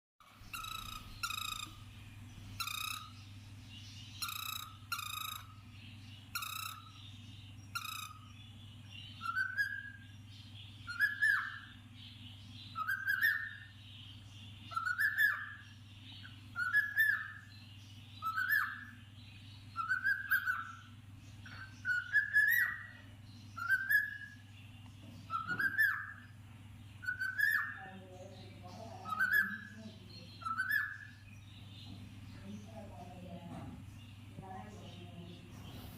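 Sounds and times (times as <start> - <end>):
steady low hum: 0.2 - 35.9
cockatiel chirping and whistling: 0.5 - 1.8, 2.6 - 3.2, 4.2 - 5.6, 6.3 - 6.9, 7.7 - 8.3, 9.2 - 10.1, 10.8 - 11.8, 12.7 - 13.8, 14.7 - 17.5, 18.2 - 19.0, 19.7 - 23.0, 23.6 - 24.4, 25.3 - 26.4, 27.0 - 27.9, 29.0 - 29.8, 30.4 - 31.3.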